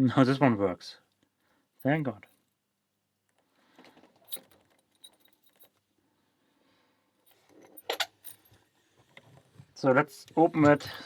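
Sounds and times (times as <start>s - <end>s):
padlock and key rattling: 4.2s - 5.8s, 7.3s - 8.5s.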